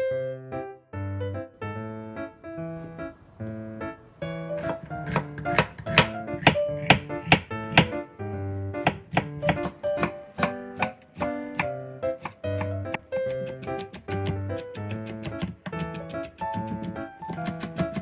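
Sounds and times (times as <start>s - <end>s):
light piano music: 0.0s - 18.0s
knife chopping on cutting board: 4.6s - 8.0s, 8.8s - 18.0s.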